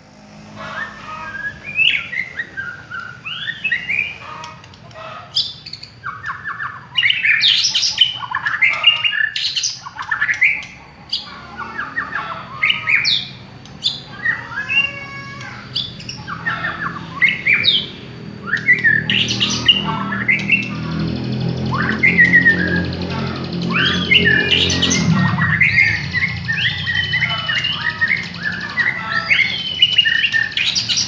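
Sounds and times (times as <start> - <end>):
low hum: 15.8 - 29.9
songbird singing whistled phrases: 23.7 - 31.0.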